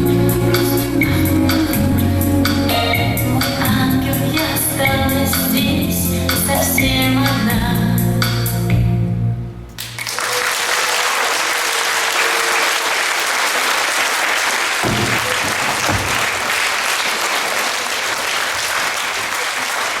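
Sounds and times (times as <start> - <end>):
audience applause: 9.8 - 20.0.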